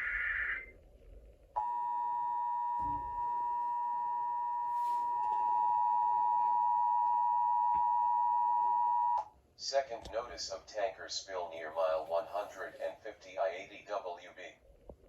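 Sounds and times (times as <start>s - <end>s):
data header bursts: 0.0s - 0.7s.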